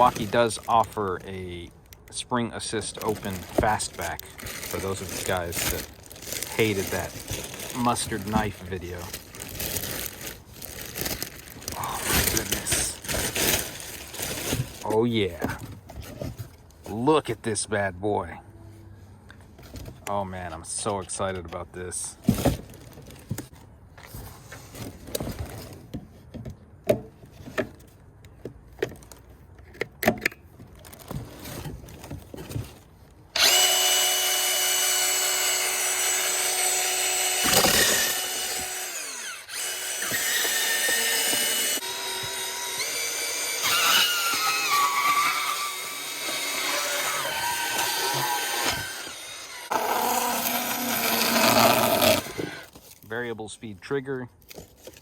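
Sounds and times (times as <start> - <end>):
band saw whining: 33.4 - 52.7.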